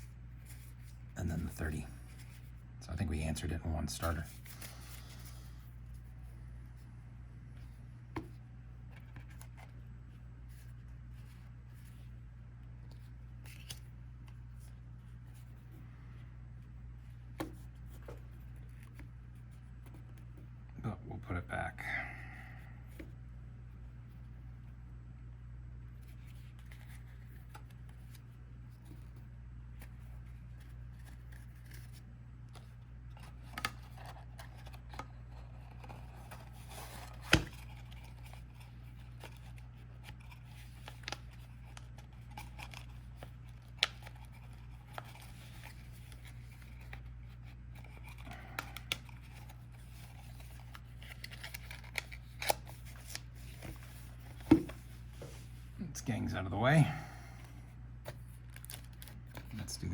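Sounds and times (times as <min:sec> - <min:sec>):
steady low hum: 0:00.0 - 0:59.9
cardboard packaging rustling: 0:32.6 - 0:55.6, 0:58.0 - 0:59.9.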